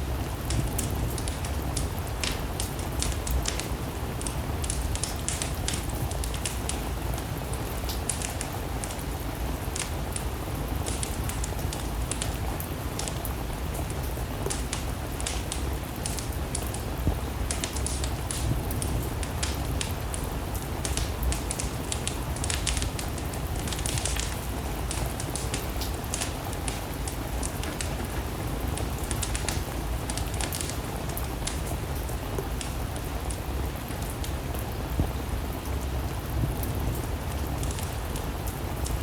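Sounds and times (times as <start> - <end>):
rain hissing: 0.0 - 39.0
wood fire crackling and popping: 0.0 - 39.0.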